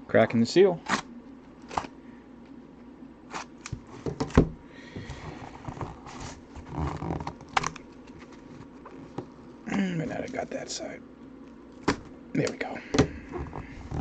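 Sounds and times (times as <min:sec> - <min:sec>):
cardboard tearing and scraping: 0:05.4 - 0:07.8.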